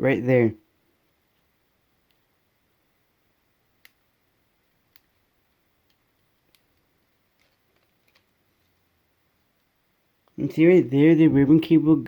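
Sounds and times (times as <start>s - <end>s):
faint plastic clicks: 5.8s - 10.4s.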